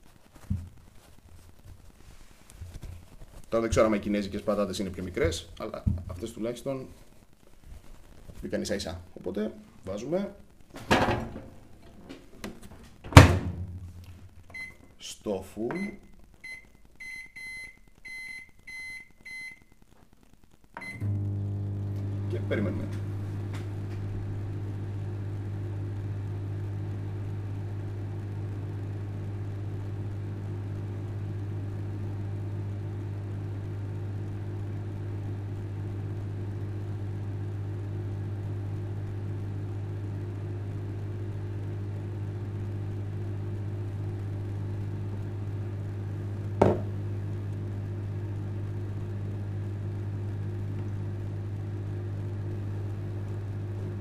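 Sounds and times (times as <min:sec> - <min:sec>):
microwave oven humming: 0:10.8 - 0:14.9, 0:20.8 - 0:54.0.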